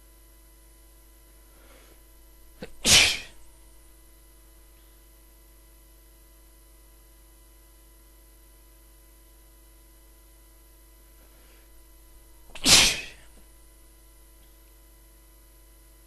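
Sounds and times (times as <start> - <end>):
man sneezing loudly: 2.6 - 3.4, 12.5 - 13.4.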